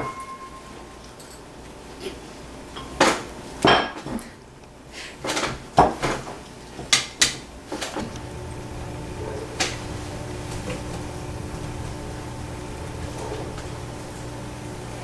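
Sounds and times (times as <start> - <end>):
dishes clattering: 0.0 - 1.4, 2.8 - 4.3, 13.0 - 13.8.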